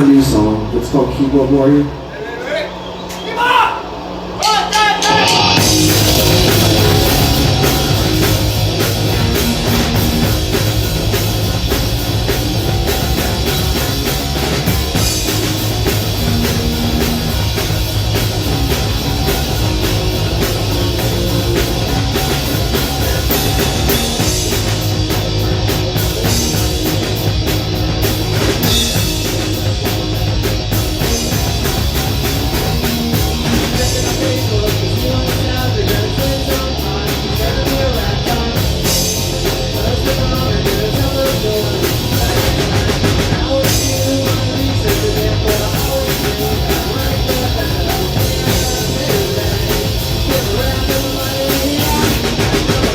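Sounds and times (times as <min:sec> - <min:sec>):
bass guitar: 0:00.0 - 0:02.1, 0:03.4 - 0:52.9
distorted electric guitar: 0:00.0 - 0:52.9
pounding drum kit: 0:00.0 - 0:52.9.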